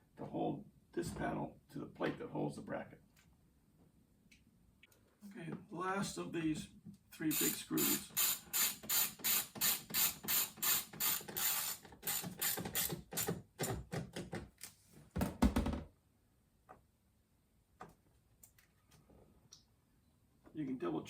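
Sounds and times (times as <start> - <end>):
ratchet wrench clicking: 7.3 - 13.3.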